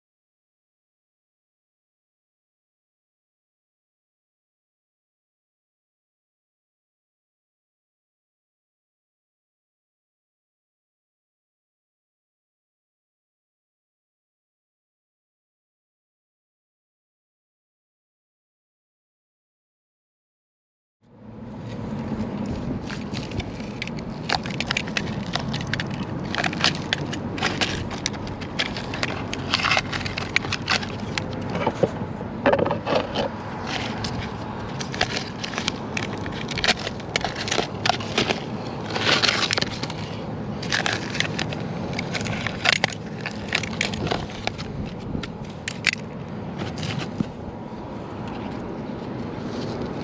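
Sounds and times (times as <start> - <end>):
knocks and clatter: 23.0 - 34.2.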